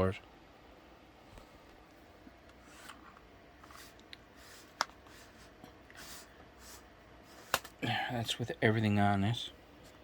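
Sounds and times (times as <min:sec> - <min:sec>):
hands rustling computer parts: 0:01.4 - 0:07.8.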